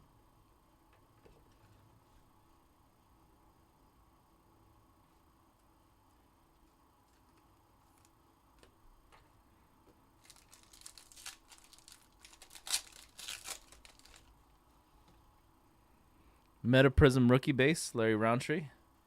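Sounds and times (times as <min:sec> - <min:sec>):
foil wrapper tearing and crinkling: 0:10.2 - 0:14.3.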